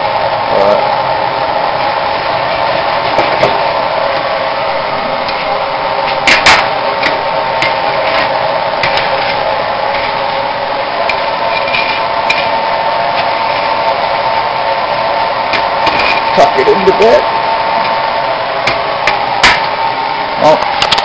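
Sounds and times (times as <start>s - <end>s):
forge blowing roar: 0.0s - 21.0s.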